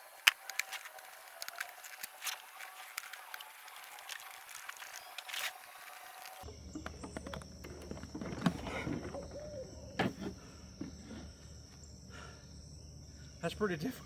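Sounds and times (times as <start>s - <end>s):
plastic tubes clicking and creaking: 0.0s - 9.2s.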